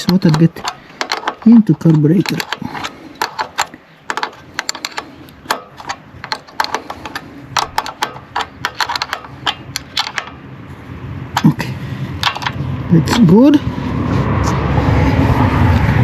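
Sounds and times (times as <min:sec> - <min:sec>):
small metal parts clicking: 0:00.0 - 0:10.4, 0:11.4 - 0:13.4.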